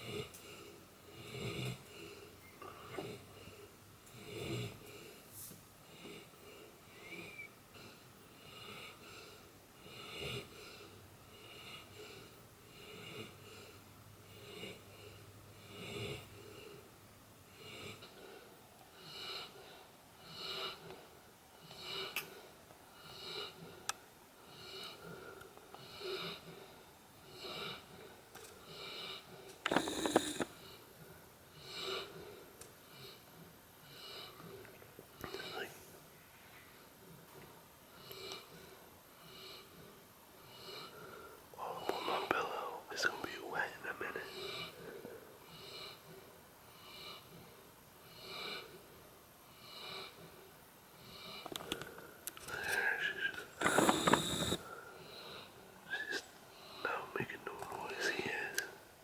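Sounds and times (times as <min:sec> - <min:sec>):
dog snoring: 0:00.0 - 0:05.2, 0:05.9 - 0:16.8, 0:24.4 - 0:30.8, 0:44.2 - 0:48.9, 0:49.5 - 0:51.4, 0:53.3 - 0:56.2.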